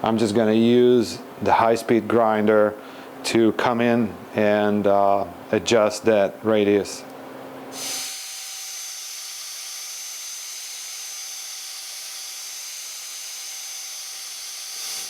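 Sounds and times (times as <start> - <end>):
grinder spinning with high whine: 7.7 - 15.0.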